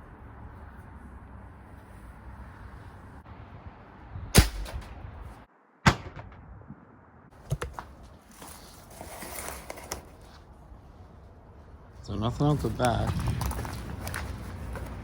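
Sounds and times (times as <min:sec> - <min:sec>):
air rifle shots: 0:04.4 - 0:05.0, 0:05.8 - 0:06.8.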